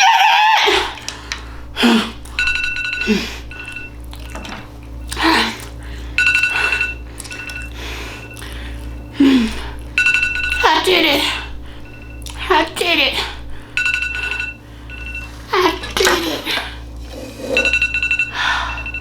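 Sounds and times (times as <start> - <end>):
digital timer alarm beeping: 2.4 - 4.0, 6.2 - 8.5, 9.9 - 10.8, 13.8 - 15.4, 17.6 - 19.0.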